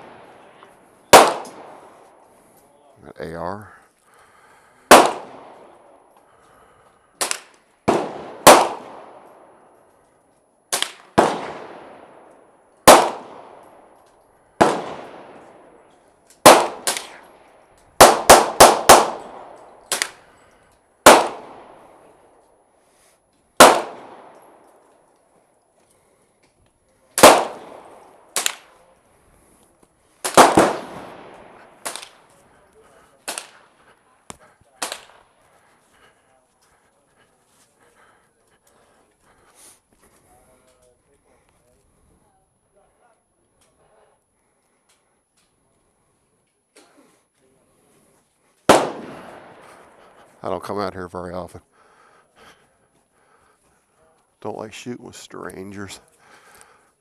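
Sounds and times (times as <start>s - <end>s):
gunshots with echo: 1.1s - 2.0s, 4.9s - 5.9s, 7.2s - 9.3s, 10.7s - 12.2s, 12.8s - 13.7s, 14.6s - 15.6s, 16.4s - 17.3s, 18.0s - 20.2s, 21.0s - 22.0s, 23.6s - 24.6s, 27.2s - 28.7s, 30.2s - 32.3s, 48.7s - 50.2s.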